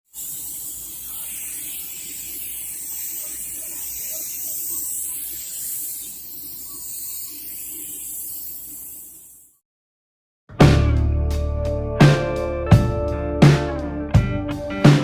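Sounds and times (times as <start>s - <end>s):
spray gun hissing: 0.0s - 9.6s.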